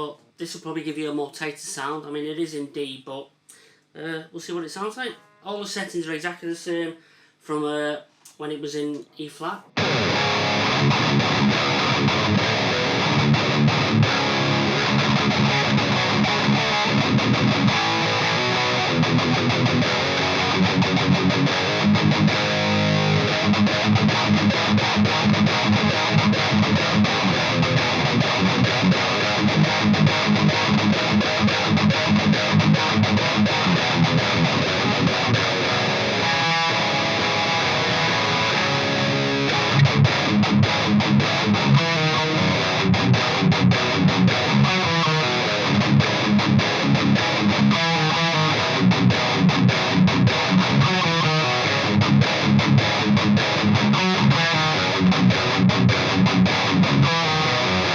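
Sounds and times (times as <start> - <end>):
distorted electric guitar riffing: 9.7 - 57.9.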